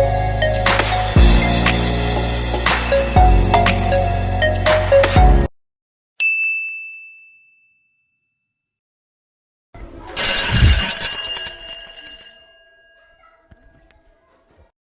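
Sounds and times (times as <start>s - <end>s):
bell-like ringing: 6.2s - 8.4s, 10.2s - 13.4s
high ding: 6.2s - 8.6s, 10.2s - 13.4s.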